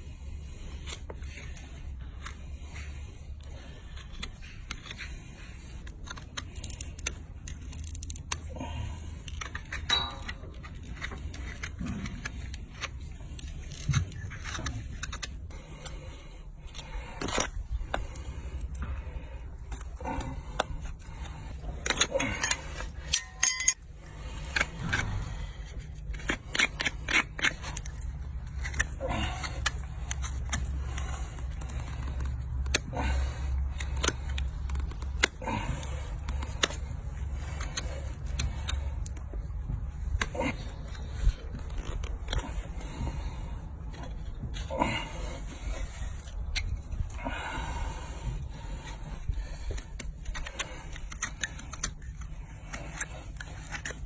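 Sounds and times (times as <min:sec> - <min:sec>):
metal tools clicking and scraping hoof: 0:09.1 - 0:15.9, 0:20.6 - 0:32.8, 0:33.6 - 0:43.1, 0:48.9 - 0:54.0
low rumble: 0:24.2 - 0:26.2.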